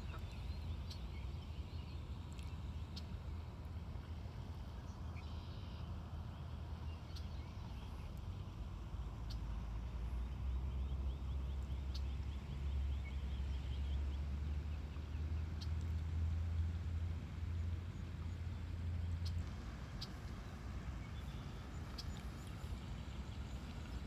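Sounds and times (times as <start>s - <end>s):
steady low rumble: 0.0s - 24.0s
faint bird chirps: 4.9s - 6.0s.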